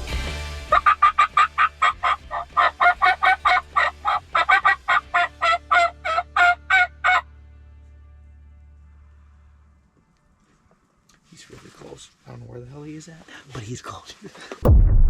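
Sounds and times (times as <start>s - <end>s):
turkey yelping: 0.7s - 7.2s.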